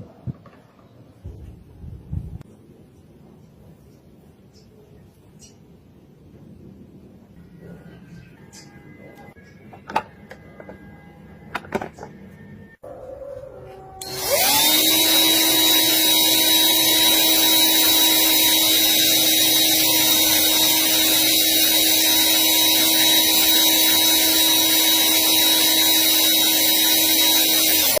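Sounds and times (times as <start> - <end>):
small electric motor whining: 14.0 - 28.0.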